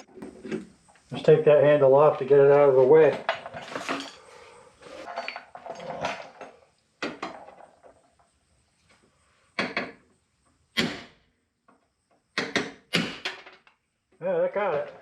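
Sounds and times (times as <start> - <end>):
hard parts rattling: 2.1 - 8.1.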